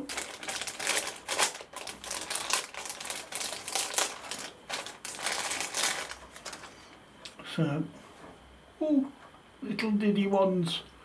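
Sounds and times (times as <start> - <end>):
plastic parts clicking and crinkling: 0.0 - 7.4.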